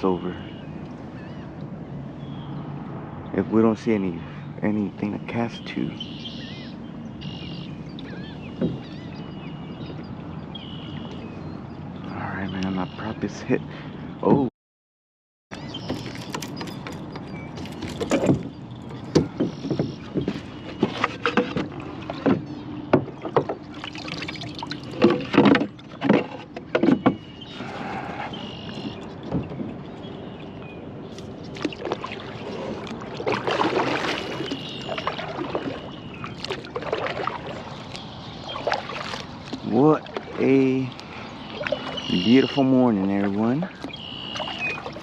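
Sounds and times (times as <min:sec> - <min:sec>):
water sloshing around hull: 0:00.0 - 0:14.5, 0:15.5 - 0:45.0
kayak knocks and clunks: 0:08.0 - 0:11.2, 0:14.2 - 0:14.5, 0:15.6 - 0:45.0.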